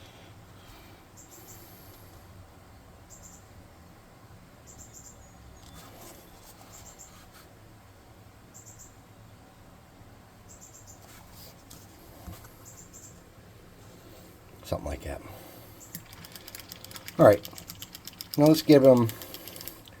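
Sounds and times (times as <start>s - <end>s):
soft handling clicks: 15.8s - 20.0s.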